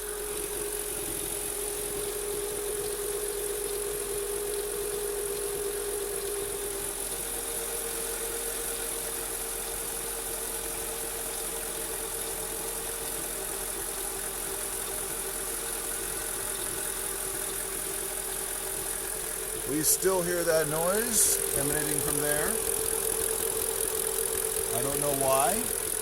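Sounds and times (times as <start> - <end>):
car engine idling: 0.0 - 26.0
gurgling bubbling engine noise: 0.2 - 10.3.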